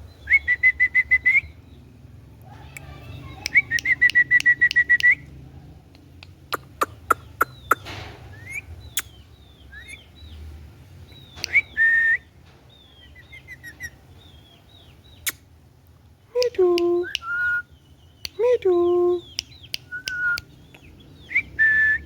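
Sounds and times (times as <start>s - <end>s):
parakeet whistling and chirping: 21.2s - 22.0s.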